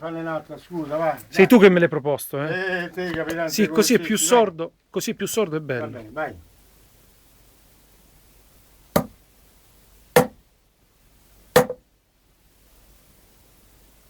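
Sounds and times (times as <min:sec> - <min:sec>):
sharp foley blows on a prop: 0:09.0 - 0:09.2, 0:10.2 - 0:10.4, 0:11.6 - 0:11.8.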